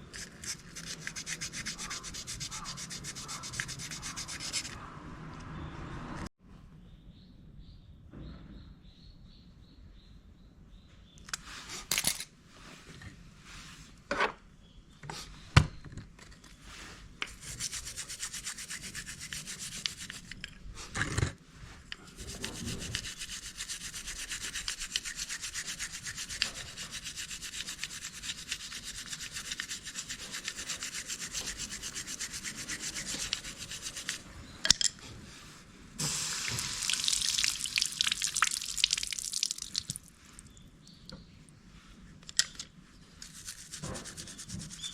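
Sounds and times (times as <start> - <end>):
hand scrubbing brake parts: 0.0 - 4.8, 17.3 - 20.4, 22.0 - 34.3, 36.0 - 40.5, 43.2 - 44.9.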